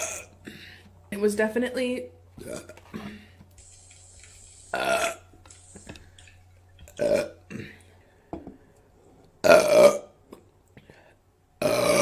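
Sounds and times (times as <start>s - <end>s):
woman burping: 0.0s - 0.4s, 2.4s - 2.8s, 4.8s - 5.3s, 7.0s - 7.8s, 9.4s - 10.2s, 11.6s - 12.0s.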